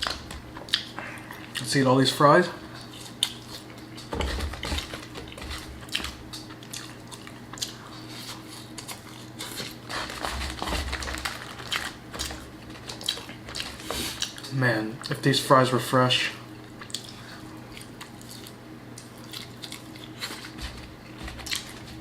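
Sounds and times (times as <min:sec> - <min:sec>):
chewing fries: 0:00.0 - 0:15.3, 0:16.6 - 0:22.0.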